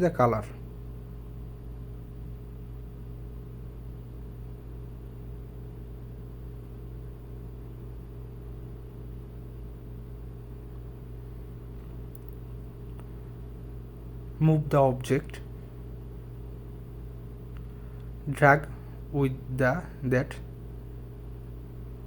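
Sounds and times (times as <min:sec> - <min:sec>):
low background hum: 0:00.0 - 0:22.0
faint clicks: 0:12.1 - 0:13.1.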